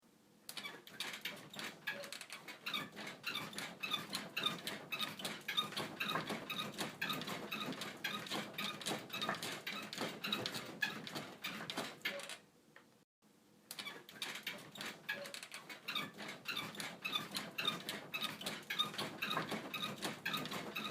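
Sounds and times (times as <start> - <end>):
bed creaking and squeaking: 0.5 - 12.4, 13.7 - 20.9.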